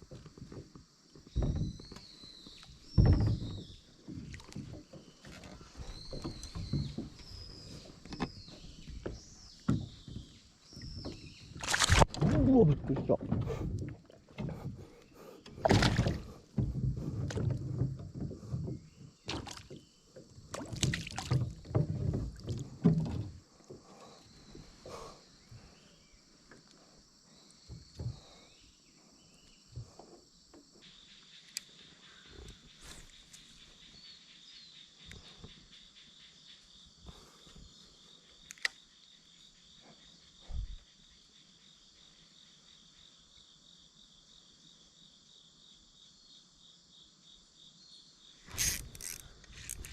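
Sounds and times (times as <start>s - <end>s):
water splashing: 11.6s - 14.7s, 15.6s - 17.8s, 19.2s - 19.8s, 20.5s - 23.2s
insect chirring: 45.0s - 49.9s.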